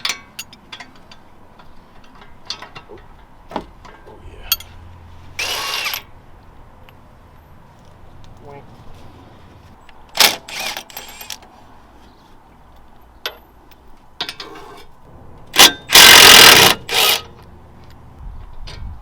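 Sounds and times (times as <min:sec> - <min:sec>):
impact wrench bursts: 0:05.4 - 0:06.1, 0:10.2 - 0:11.4, 0:15.6 - 0:17.3.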